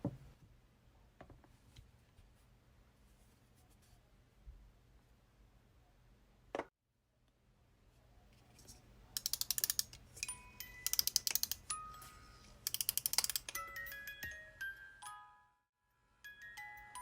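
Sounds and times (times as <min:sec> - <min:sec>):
ratchet clicks of winding key: 0:09.2 - 0:11.8, 0:12.6 - 0:13.9
music box notes: 0:10.2 - 0:17.0.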